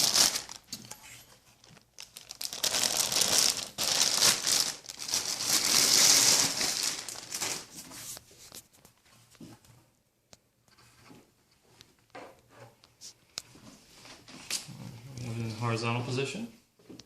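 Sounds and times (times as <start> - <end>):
plastic packaging crinkling: 0.0 - 8.7.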